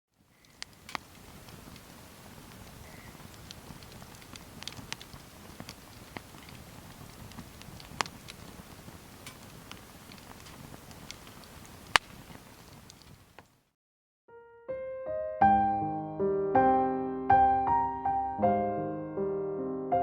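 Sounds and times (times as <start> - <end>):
wood fire crackling: 0.1 - 13.7
sharp pops of fire: 0.2 - 13.6.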